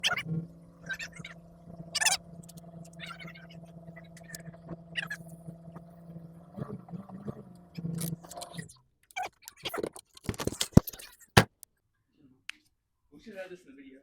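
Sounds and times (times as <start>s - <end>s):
steady low hum: 0.0s - 8.8s.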